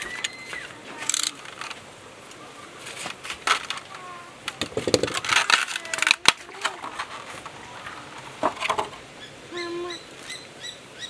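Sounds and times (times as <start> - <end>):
packaging crackling and crinkling: 2.9 - 8.8.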